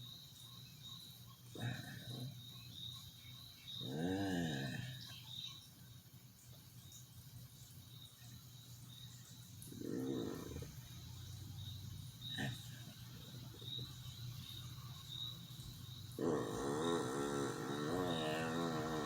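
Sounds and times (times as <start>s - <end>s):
faint steady hum: 0.0s - 19.0s
person moaning in sleep: 16.2s - 19.0s.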